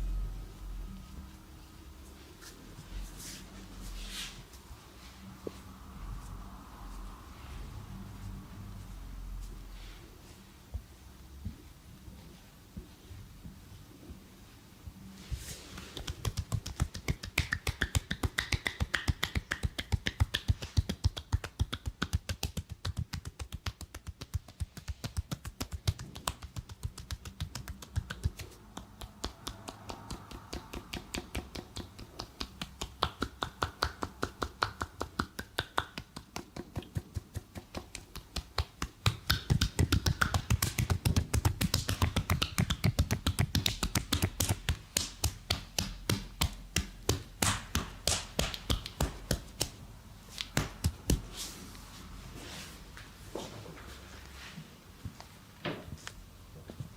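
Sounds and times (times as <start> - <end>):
hands slapping in percussive massage: 15.6 - 51.4.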